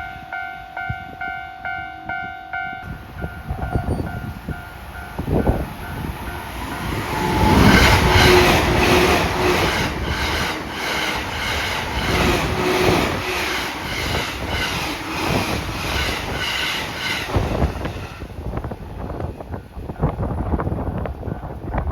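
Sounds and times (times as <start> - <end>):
level-crossing warning bell: 0.0 - 7.6
electric train passing: 0.0 - 21.9.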